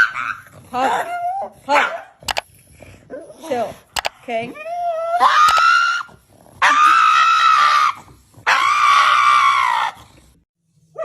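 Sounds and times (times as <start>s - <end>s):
dog screaming: 5.1s - 10.0s.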